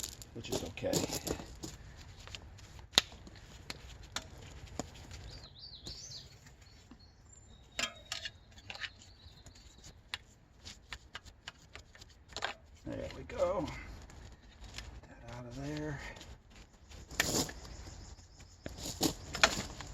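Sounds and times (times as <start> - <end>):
bird chirping: 5.0 - 10.4, 17.4 - 19.9.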